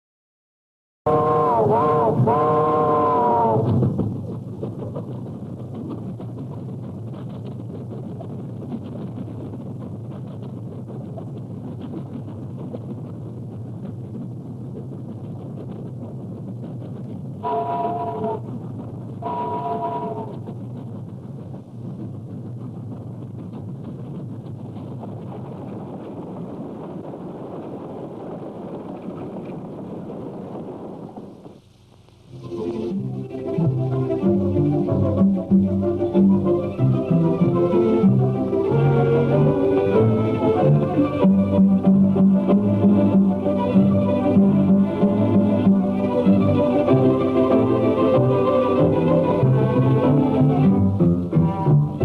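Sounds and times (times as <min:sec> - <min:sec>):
low crackly rumbling: 0:01.1 - 0:52.0
music: 0:32.3 - 0:52.0.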